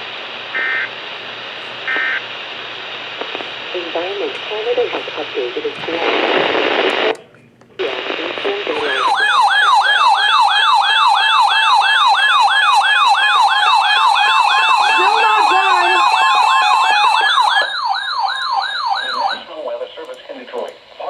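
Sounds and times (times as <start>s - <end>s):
siren-like alert wail: 8.8s - 19.4s
high beeping tone: 13.6s - 17.6s.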